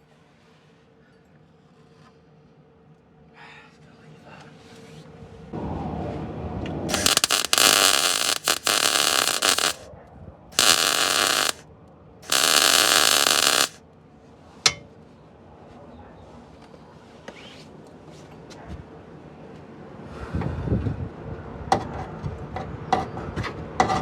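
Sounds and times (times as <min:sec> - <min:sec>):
welder arc crackling: 0:06.9 - 0:09.8, 0:10.6 - 0:11.6, 0:12.2 - 0:13.8.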